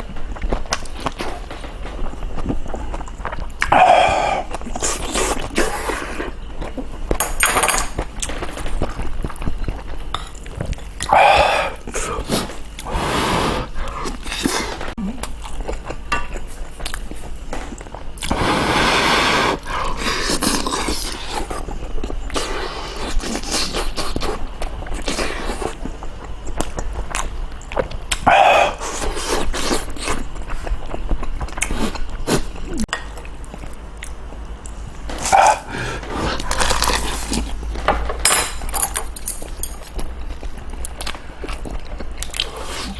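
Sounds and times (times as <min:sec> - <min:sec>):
cutlery clinking against bowls: 0:07.2 - 0:08.0, 0:37.9 - 0:39.9
chewing and biting: 0:19.7 - 0:37.9, 0:39.0 - 0:42.9.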